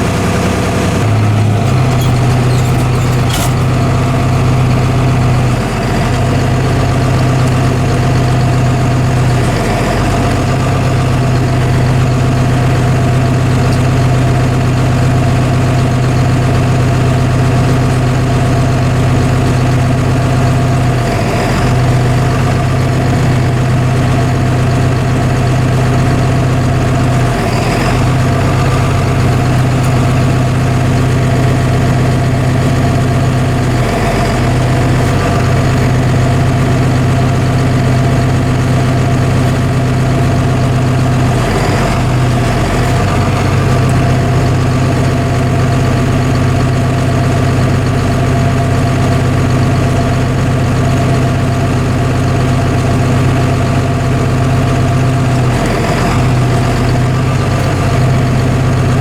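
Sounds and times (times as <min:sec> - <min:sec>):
farm machinery engine running: 0:00.0 - 0:59.0.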